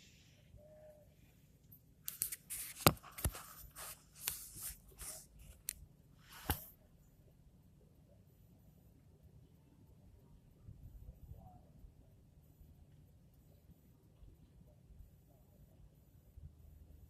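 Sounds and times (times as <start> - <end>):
scrapes and rustles: 2.1 - 6.7.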